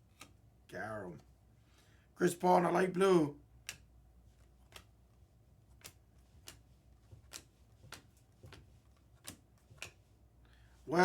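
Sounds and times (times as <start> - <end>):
trading cards clicking: 3.6 - 5.0, 5.7 - 6.6.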